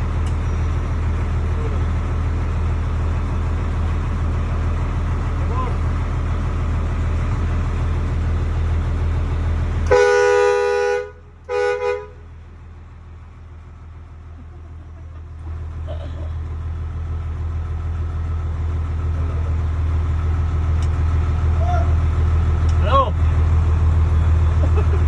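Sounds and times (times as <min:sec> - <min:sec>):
truck engine rumble: 0:00.0 - 0:25.0
fire truck horn blasts: 0:09.8 - 0:12.4.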